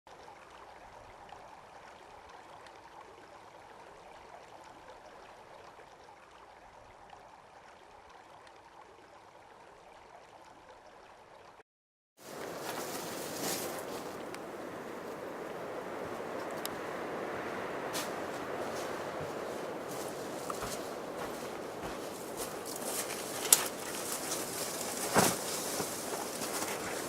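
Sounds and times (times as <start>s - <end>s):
faint steady rushing noise: 12.2s - 27.0s.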